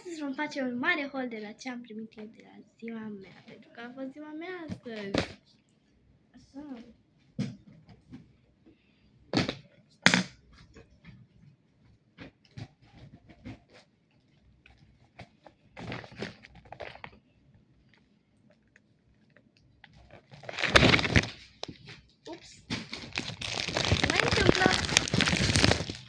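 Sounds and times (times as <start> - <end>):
packaging rustling: 19.9 - 22.0, 22.7 - 26.0.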